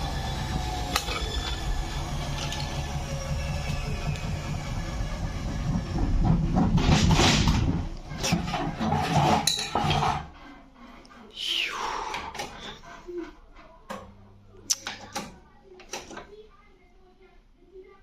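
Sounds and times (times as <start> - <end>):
washing machine running: 0.0 - 10.3
washing machine rattling and knocking: 3.5 - 10.2.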